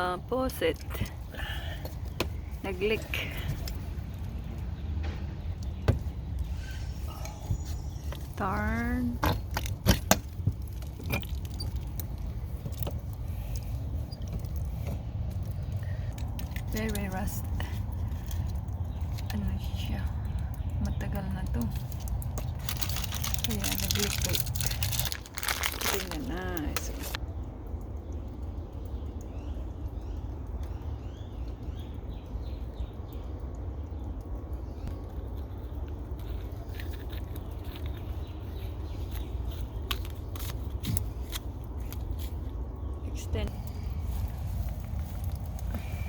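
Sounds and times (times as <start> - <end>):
steady low rumble: 0.0 - 46.0
bird chirping: 0.7 - 9.0.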